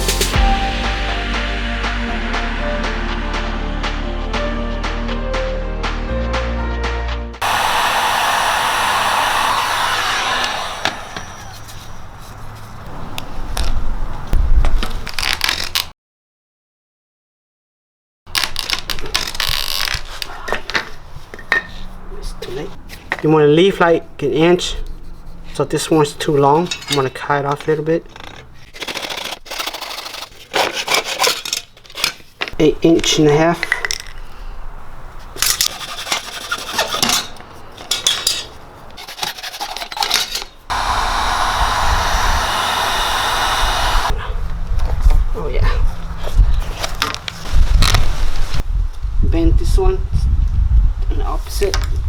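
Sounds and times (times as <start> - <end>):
heat gun running: 7.4 - 11.7, 40.7 - 44.1
metal tools clinking: 26.5 - 28.4.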